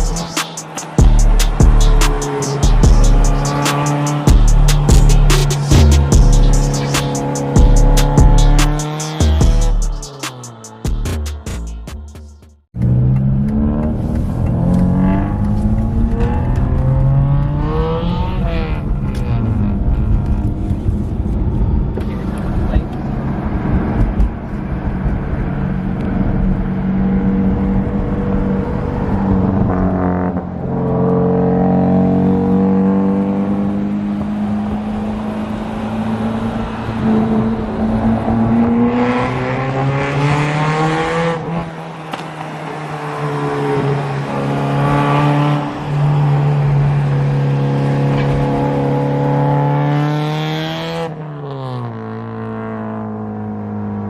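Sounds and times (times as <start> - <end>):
car engine revving through gears: 0.0 - 11.1, 12.7 - 52.7.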